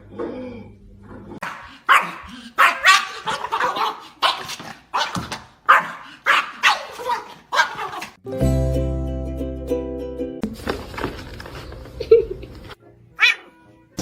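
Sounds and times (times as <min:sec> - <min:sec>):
dog barking: 0:01.4 - 0:08.2, 0:13.2 - 0:13.5.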